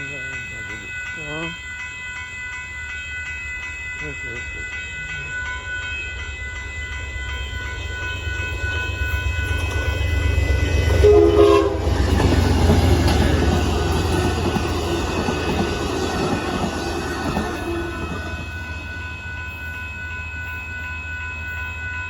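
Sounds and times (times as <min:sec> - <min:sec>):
train wheels clattering: 0:09.5 - 0:18.7
diesel locomotive rumble: 0:09.8 - 0:18.6
train horn blast: 0:11.0 - 0:12.0.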